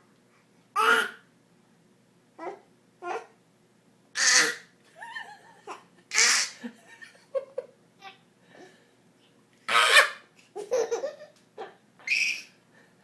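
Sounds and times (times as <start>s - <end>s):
baby laughing and babbling: 2.4s - 3.4s.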